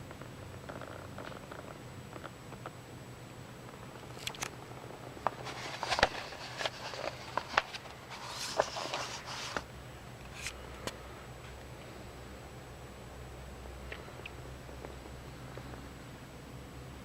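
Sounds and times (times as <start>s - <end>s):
paper pages rustling: 5.3s - 9.7s.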